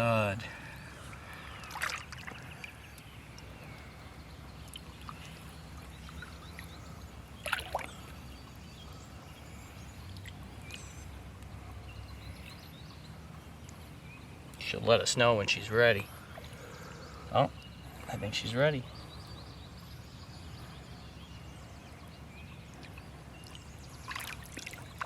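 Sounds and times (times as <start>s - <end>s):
water sloshing: 0.0s - 4.0s, 4.6s - 8.2s, 22.7s - 25.0s
faint outdoor background noise: 0.0s - 25.0s
fish splashing: 1.0s - 2.8s, 7.4s - 8.1s, 22.8s - 25.0s.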